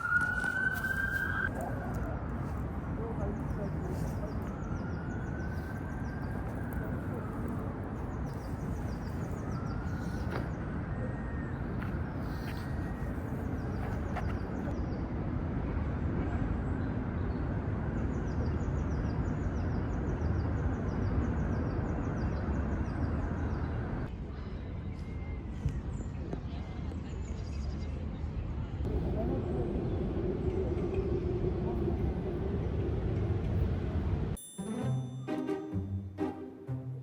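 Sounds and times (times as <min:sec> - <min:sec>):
low outdoor rumble: 0:00.0 - 0:18.2, 0:27.9 - 0:34.4.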